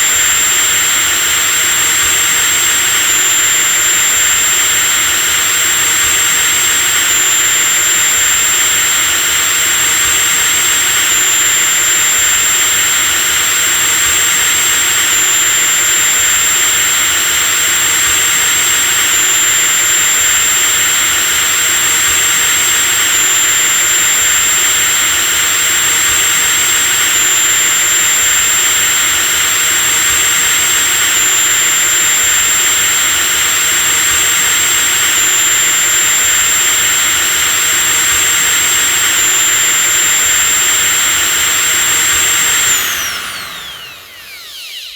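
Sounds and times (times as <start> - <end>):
electric drill running: 0.0 - 44.9.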